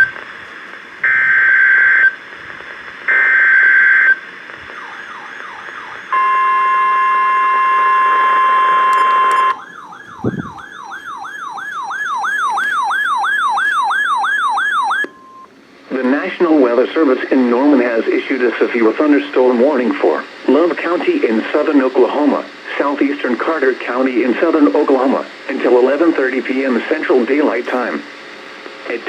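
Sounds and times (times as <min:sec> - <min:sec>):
electronic siren sweeping: 0:03.3 - 0:15.5
steady warning alarm tone: 0:04.8 - 0:15.5.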